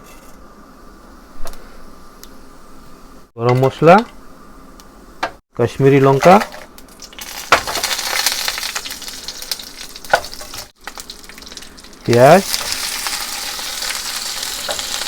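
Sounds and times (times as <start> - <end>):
spices sizzling in hot oil: 6.1 - 15.0.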